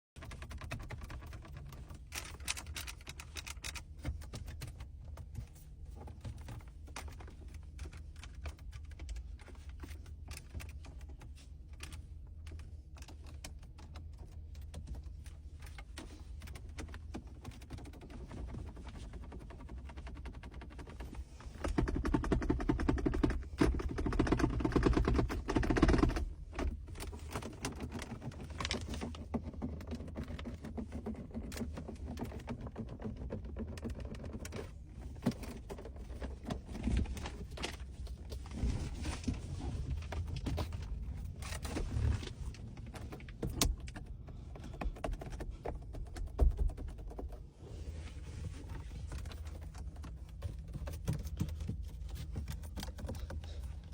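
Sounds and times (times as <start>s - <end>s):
plastic trim creaking and rattling: 0.2s - 47.6s, 48.2s - 53.9s
clicks and taps on panels: 40.0s - 47.5s, 48.8s - 53.9s.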